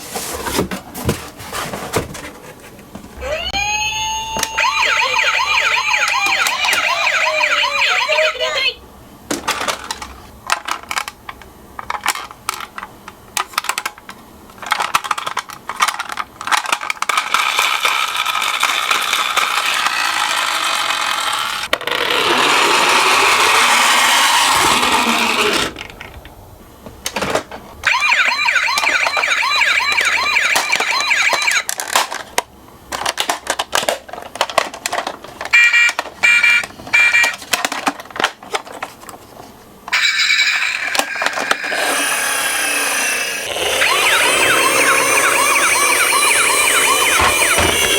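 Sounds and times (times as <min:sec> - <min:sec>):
toy siren warbling wail: 0:03.2 - 0:08.8, 0:27.9 - 0:31.7, 0:35.6 - 0:37.4, 0:39.9 - 0:47.9
plastic toy cars clicking and rattling: 0:09.3 - 0:26.4, 0:27.0 - 0:27.6, 0:30.0 - 0:46.2.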